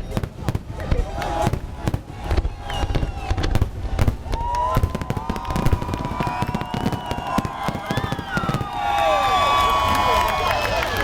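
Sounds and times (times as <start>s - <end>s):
fireworks bangs and crackles: 0.0s - 11.0s
whistle-like tones: 6.2s - 8.6s.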